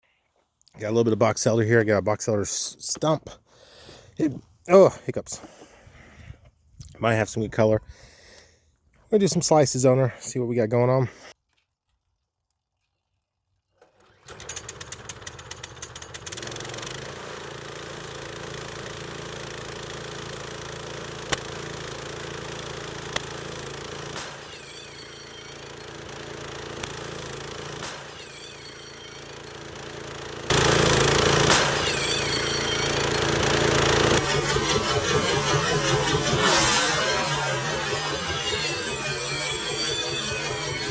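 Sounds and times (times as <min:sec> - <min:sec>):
small gas engine running: 0:13.8 - 0:40.9.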